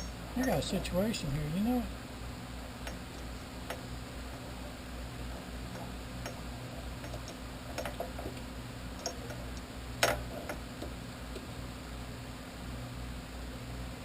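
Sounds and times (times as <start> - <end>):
steady low hum: 0.0 - 14.0
metal clicks of tools handled: 9.0 - 10.6.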